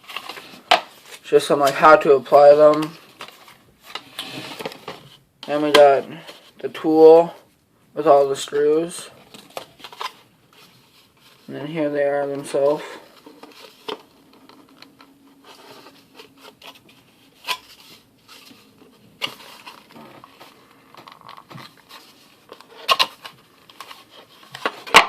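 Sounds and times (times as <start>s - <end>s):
packaging scratching and crinkling: 12.4s - 25.0s.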